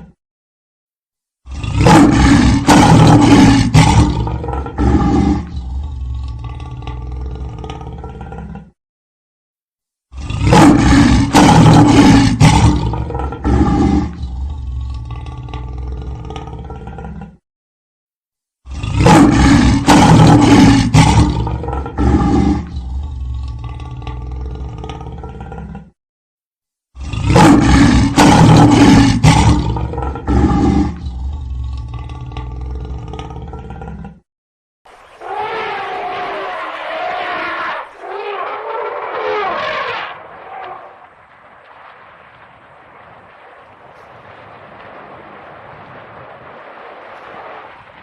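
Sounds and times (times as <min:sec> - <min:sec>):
large animal roaring: 0:01.4 - 0:08.8, 0:10.1 - 0:17.4, 0:18.7 - 0:26.0, 0:27.0 - 0:34.3, 0:34.9 - 0:41.1
low animal rumbling: 0:01.5 - 0:08.8, 0:10.1 - 0:17.4, 0:27.0 - 0:34.2, 0:34.9 - 0:47.5.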